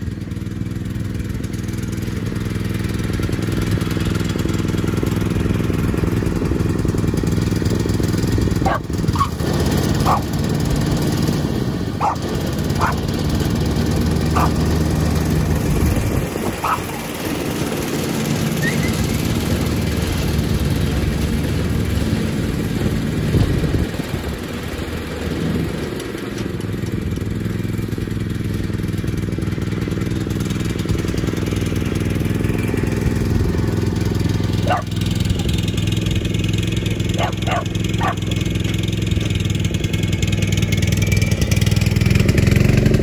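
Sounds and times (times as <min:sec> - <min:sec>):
riding lawnmower engine: 0:00.0 - 0:43.0.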